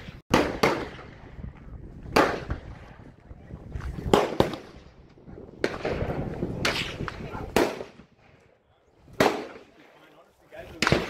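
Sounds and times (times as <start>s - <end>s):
gunshots with echo: 0.3s - 1.3s, 5.6s - 8.1s, 9.2s - 9.7s, 10.8s - 11.0s.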